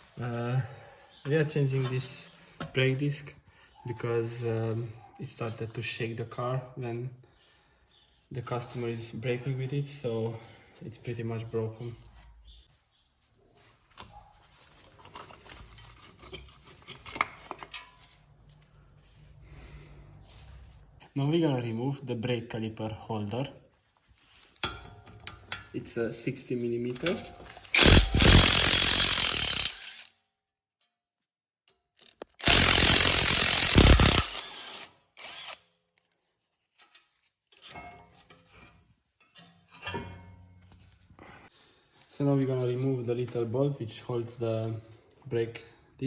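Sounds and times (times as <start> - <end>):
power tool running: 27.7 - 30.1, 32.4 - 35.6.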